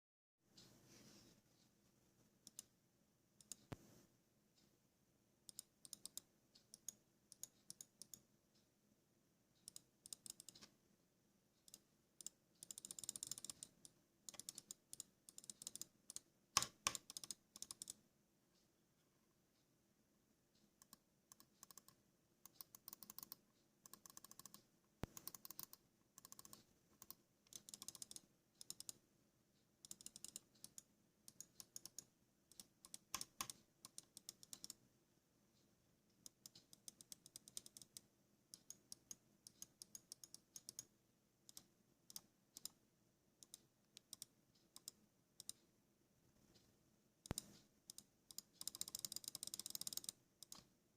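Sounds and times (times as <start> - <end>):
mouse clicking: 2.4 - 2.7, 3.4 - 3.9, 5.5 - 8.2, 9.6 - 10.7, 11.6 - 18.0, 20.8 - 29.0, 29.8 - 34.8, 36.1 - 40.9, 41.5 - 42.8, 43.4 - 45.7, 46.6 - 50.7.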